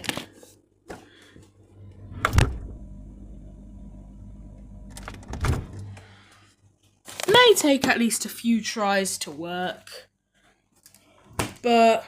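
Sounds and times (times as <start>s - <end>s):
refrigerator low hum: 0.1s - 7.4s.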